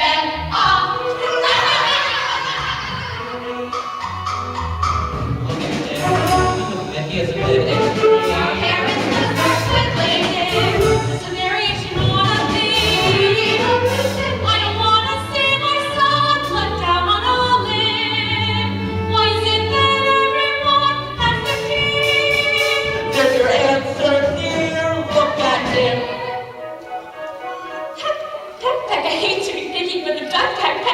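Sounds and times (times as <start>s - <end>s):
voices singing with vibrato: 0.0s - 30.9s
instrumental accompaniment: 2.5s - 30.9s.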